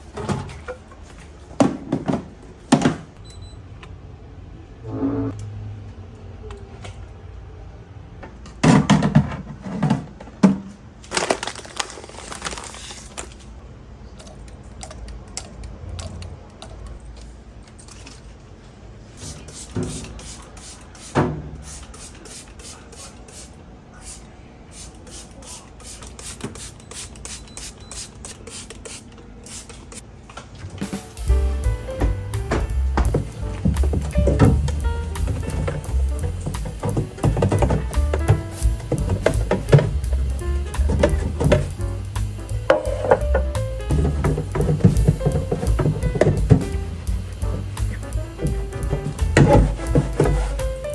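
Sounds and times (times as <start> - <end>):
items knocking and clattering: 0.0 - 3.1, 8.4 - 13.3, 30.5 - 50.9
hiss: 19.2 - 30.0.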